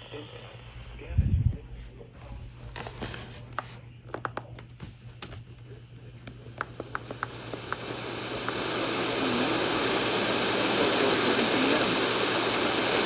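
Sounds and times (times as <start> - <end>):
static hiss: 0.0 - 1.2, 6.6 - 13.0
low radio hum: 0.0 - 13.0.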